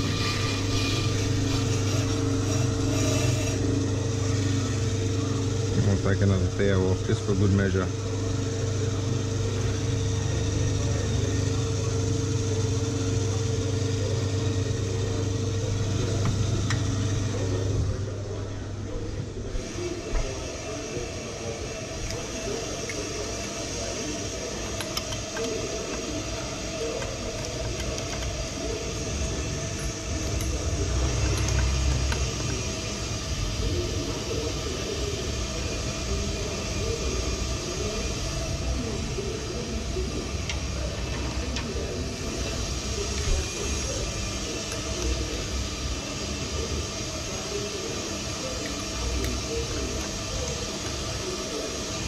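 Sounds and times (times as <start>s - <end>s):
brake lathe whining and rumbling: 0.0s - 52.0s.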